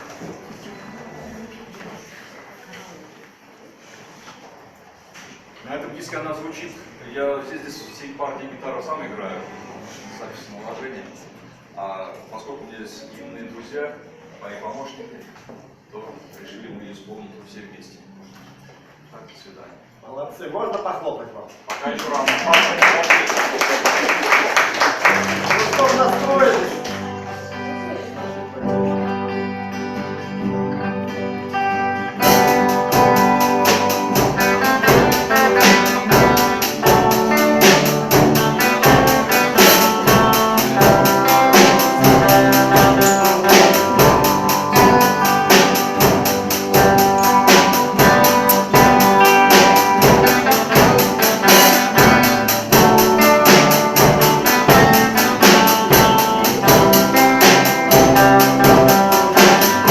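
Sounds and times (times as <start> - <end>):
guitar ensemble music with beat: 24.6 - 59.9.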